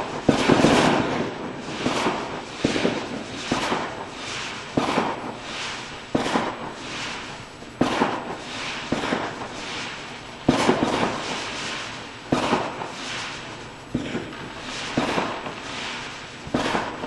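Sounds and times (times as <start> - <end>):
crackle and rumble: 0.0 - 17.0
distant fireworks bangs: 0.0 - 17.0.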